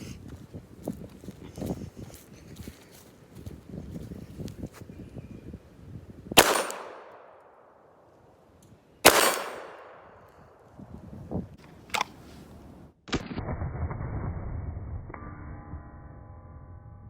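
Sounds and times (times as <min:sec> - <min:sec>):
pistol shots echoing: 0:06.4 - 0:07.9, 0:09.0 - 0:10.4.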